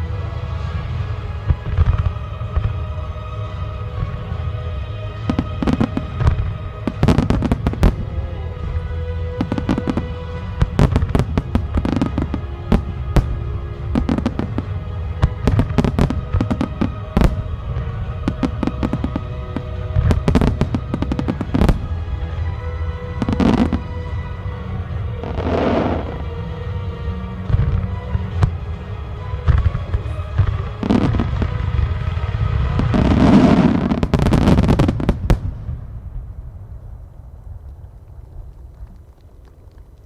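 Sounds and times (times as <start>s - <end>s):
music playing: 0.0s - 36.2s
fireworks bangs and crackles: 0.0s - 40.0s.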